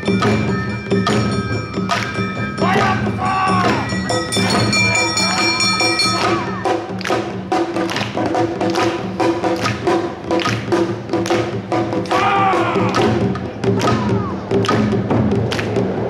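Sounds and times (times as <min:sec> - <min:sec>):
ringing metallic tones: 0:00.0 - 0:06.8
drums and hand gongs: 0:00.0 - 0:16.0.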